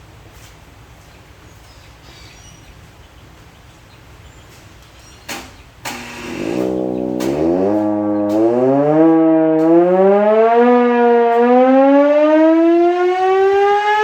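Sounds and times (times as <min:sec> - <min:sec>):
siren motor winding up: 0:05.9 - 0:14.0.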